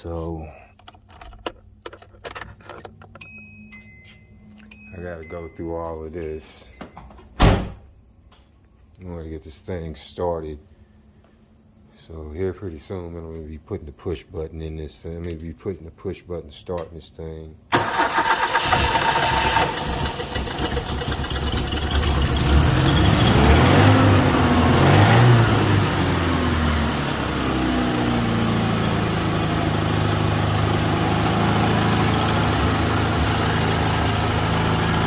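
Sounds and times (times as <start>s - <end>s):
car engine revving and idling: 18.6s - 35.0s.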